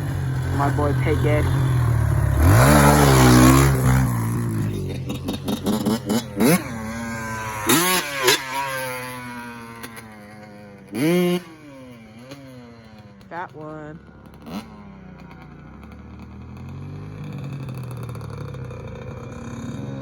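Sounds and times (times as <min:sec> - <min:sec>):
dirt bike engine revving: 0:00.0 - 0:20.0.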